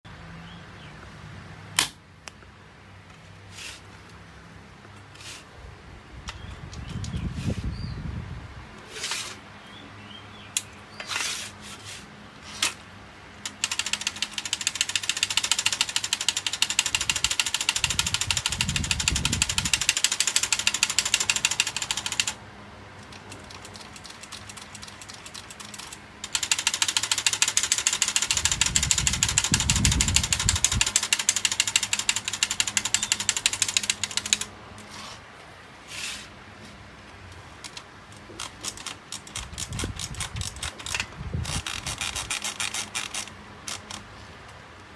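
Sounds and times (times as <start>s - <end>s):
manual typewriter clattering: 13.4s - 22.4s, 23.0s - 34.5s, 37.6s - 44.0s.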